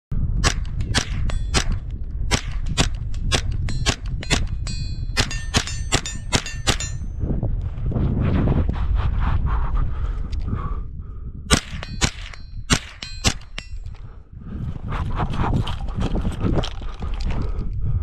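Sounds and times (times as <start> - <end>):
rapid gunfire: 0.4 - 4.5
metallic ringing: 1.2 - 1.8, 3.6 - 7.3, 11.8 - 14.0.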